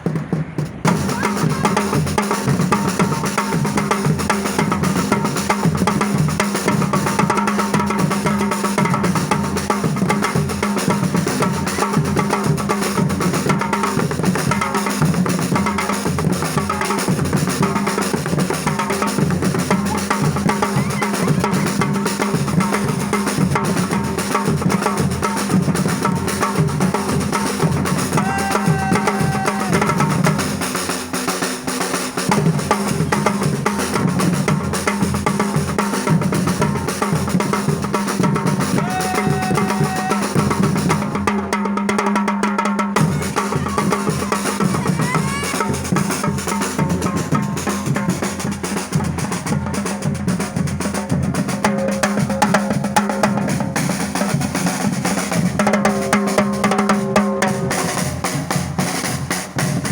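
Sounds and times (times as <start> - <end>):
music with fast drumming: 0.0 - 59.9.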